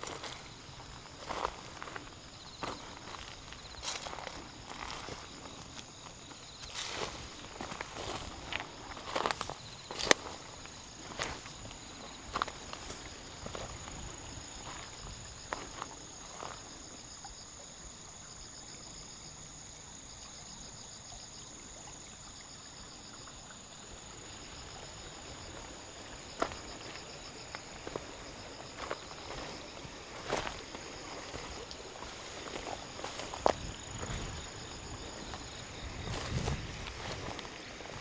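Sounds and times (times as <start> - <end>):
footsteps: 0.0 - 14.0, 26.4 - 38.0
insect trill: 0.0 - 38.0.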